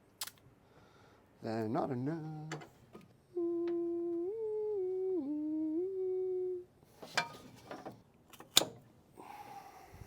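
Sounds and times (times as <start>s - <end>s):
man humming: 3.3s - 6.8s.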